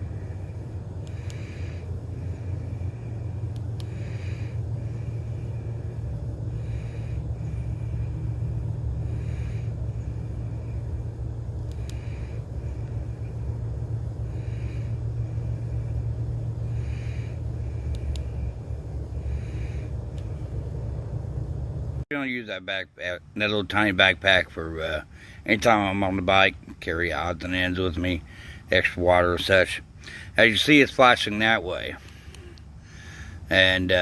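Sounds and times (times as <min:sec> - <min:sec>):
vehicle engine rumble: 0:00.0 - 0:34.0
faint clicks: 0:03.5 - 0:03.9, 0:11.6 - 0:12.0, 0:17.8 - 0:18.3.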